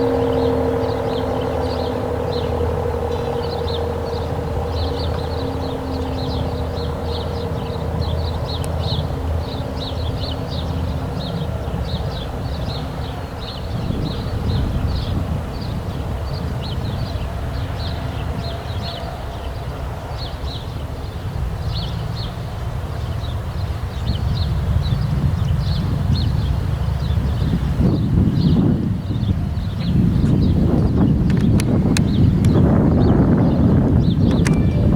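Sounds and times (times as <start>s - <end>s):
steady low rumble: 0.0s - 19.5s, 22.8s - 34.9s
small birds chirping: 19.5s - 34.9s.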